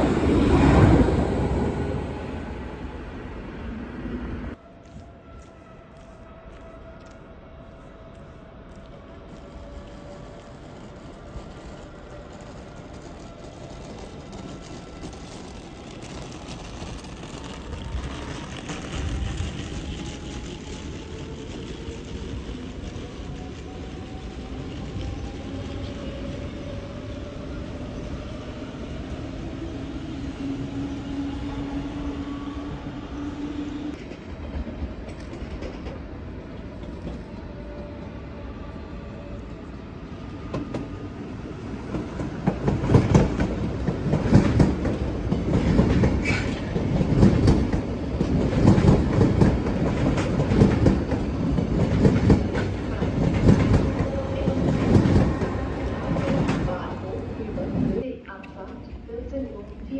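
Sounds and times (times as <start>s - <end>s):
wheels rumbling on track: 9.3s - 26.8s.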